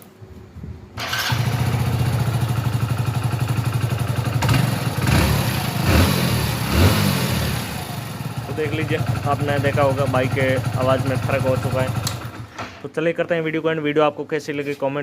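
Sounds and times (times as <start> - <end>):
motorcycle engine starting and idling: 1.0 - 12.8
motorcycle throttle blips: 1.1 - 12.5.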